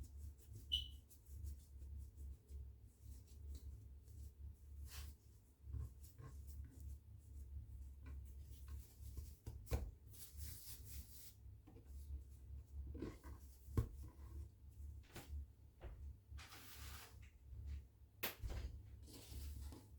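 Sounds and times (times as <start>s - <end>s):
hands working dough on a board: 0.0s - 19.9s.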